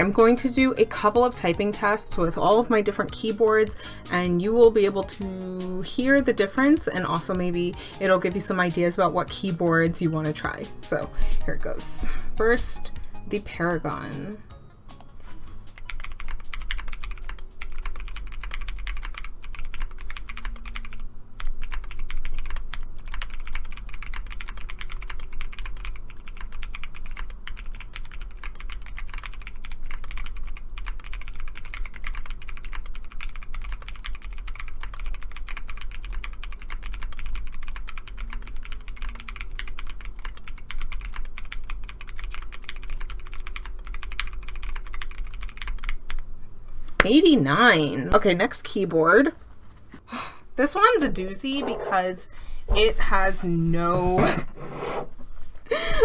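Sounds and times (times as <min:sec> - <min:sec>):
mechanical keyboard typing: 0:15.8 - 0:46.2.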